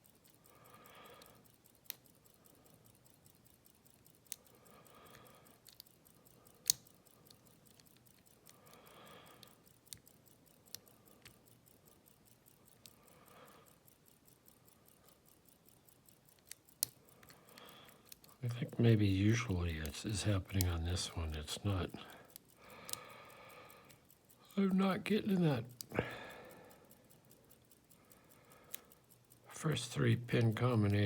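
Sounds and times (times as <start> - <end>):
metallic clicks of lock picking: 0.0 - 0.5, 1.1 - 18.8.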